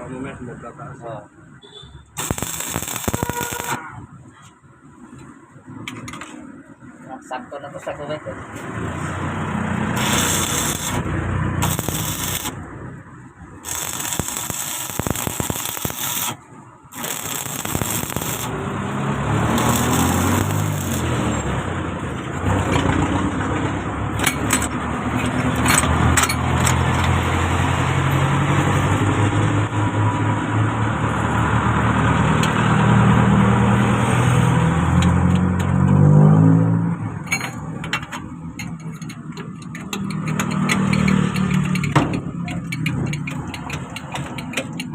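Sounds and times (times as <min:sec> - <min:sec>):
harsh scraping: 0:02.2 - 0:04.0, 0:08.6 - 0:12.6, 0:13.6 - 0:23.4
vehicle engine revving: 0:08.7 - 0:12.8, 0:13.6 - 0:24.2.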